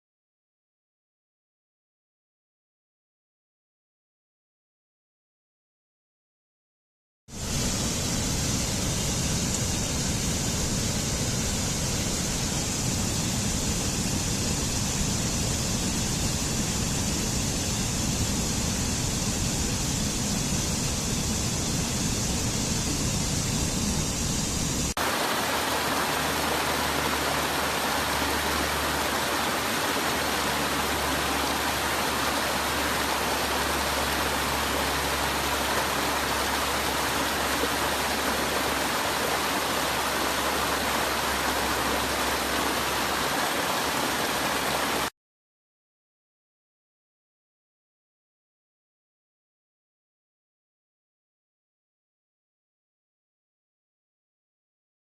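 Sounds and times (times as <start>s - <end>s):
waterfall rushing: 22.7s - 45.1s.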